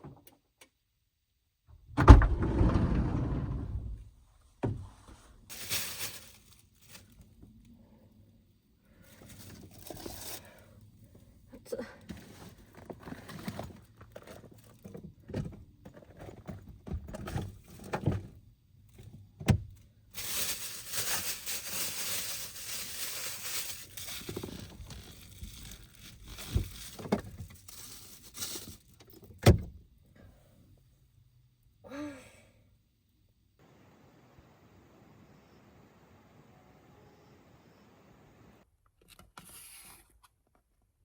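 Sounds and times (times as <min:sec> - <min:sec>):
dense rustling: 0:01.9 - 0:07.2, 0:20.1 - 0:29.0.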